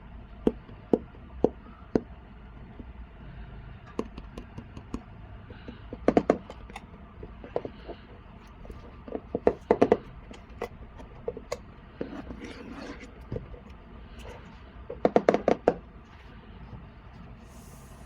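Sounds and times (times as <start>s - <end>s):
tapping and clicking on boxes: 3.9s - 15.9s.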